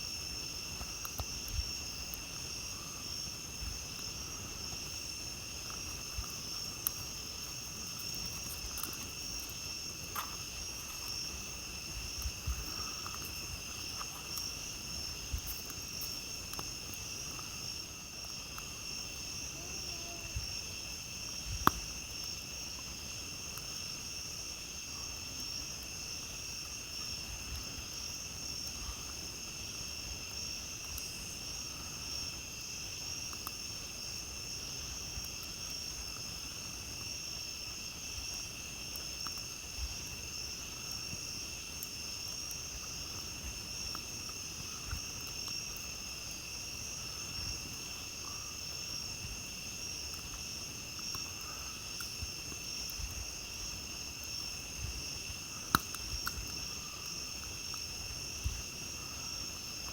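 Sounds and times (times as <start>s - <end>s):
campfire crackles and pops: 0.0s - 59.9s
night insects chorus: 0.0s - 59.9s.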